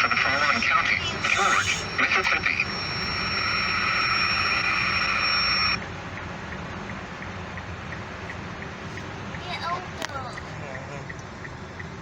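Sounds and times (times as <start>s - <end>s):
buzzy two-tone data screech: 0.0s - 5.8s
low radio hiss: 0.0s - 5.8s.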